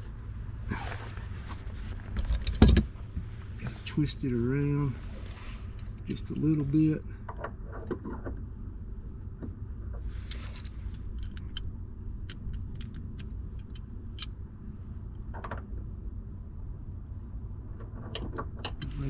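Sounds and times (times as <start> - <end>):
light metallic clicks: 5.7 - 6.8.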